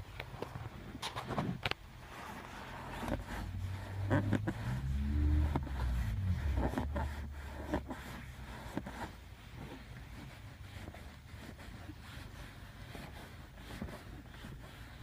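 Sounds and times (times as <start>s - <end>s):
car seat creaking and clicking: 1.0s - 11.8s.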